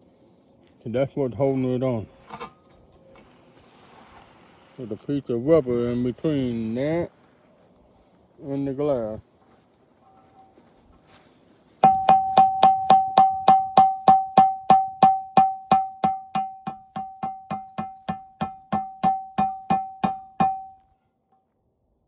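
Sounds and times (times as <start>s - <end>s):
metal strikes on steel plate: 11.8s - 20.8s.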